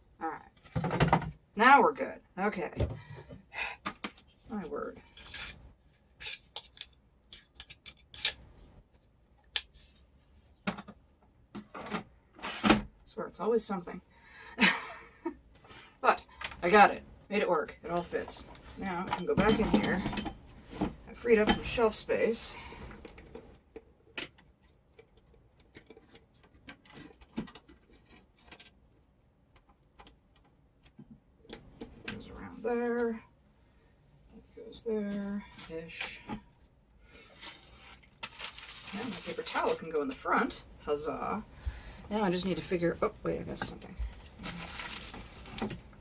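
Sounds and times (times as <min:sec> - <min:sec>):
kitchen items clicking and knocking: 0:19.0 - 0:20.5.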